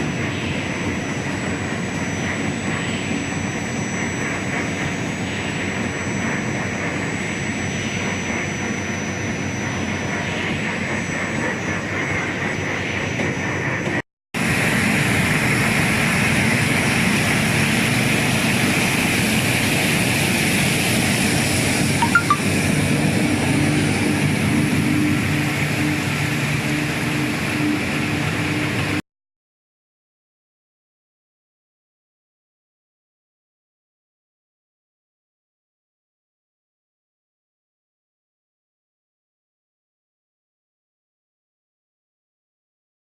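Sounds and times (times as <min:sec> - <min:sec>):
loud machinery noise: 0:00.0 - 0:29.0.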